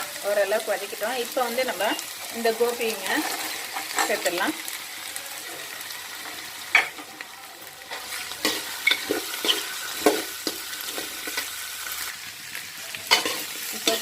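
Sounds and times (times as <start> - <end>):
vegetables sizzling in oil: 0.0 - 14.0
spatula scraping and knocking pan: 8.4 - 11.5.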